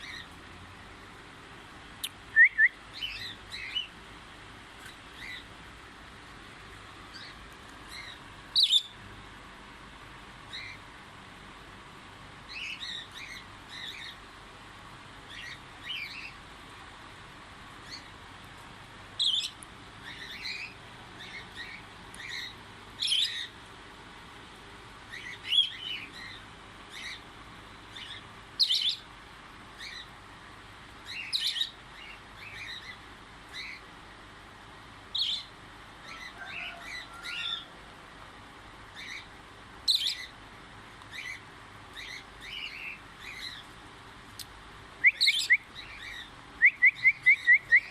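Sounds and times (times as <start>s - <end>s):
parrots chirping: 2.0s - 3.9s, 7.1s - 9.0s, 12.5s - 14.2s, 15.3s - 16.4s, 19.2s - 23.6s, 25.1s - 27.3s, 27.9s - 29.0s, 31.0s - 33.9s, 38.9s - 40.4s, 41.1s - 43.7s, 45.0s - 47.9s
quiet parrot twittering: 45.0s - 47.9s.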